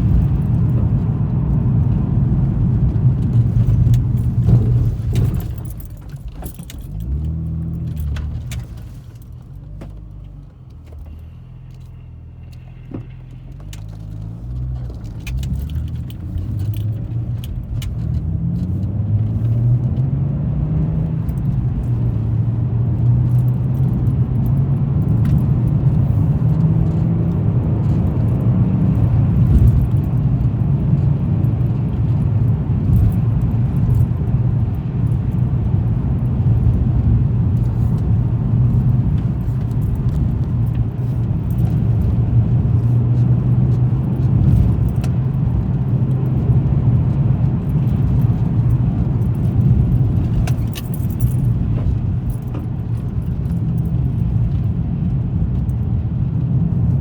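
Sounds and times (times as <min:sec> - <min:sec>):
car engine and tyre drone: 0:00.0 - 0:57.0.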